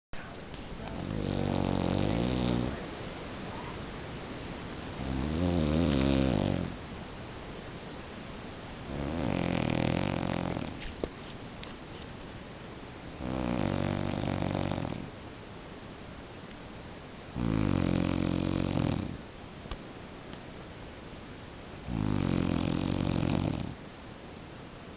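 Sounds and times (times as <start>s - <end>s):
man snoring: 1.0s - 2.8s, 5.0s - 6.7s, 8.9s - 10.8s, 13.1s - 15.1s, 17.3s - 19.2s, 21.8s - 23.8s.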